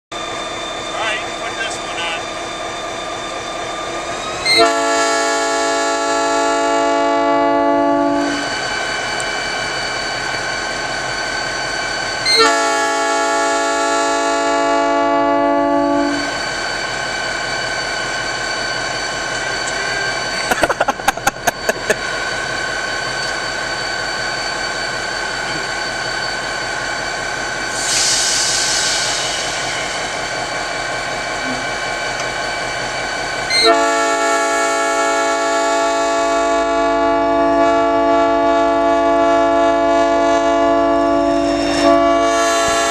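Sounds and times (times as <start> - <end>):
locomotive running: 0.1 - 42.9
train air horn blasts: 4.4 - 8.5, 12.2 - 16.3, 33.5 - 42.9.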